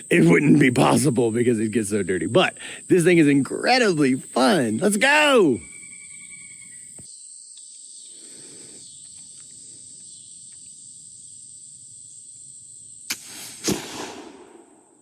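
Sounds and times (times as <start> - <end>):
crickets chirping: 0.0 - 15.0
flintlock pistol firing: 13.1 - 15.0.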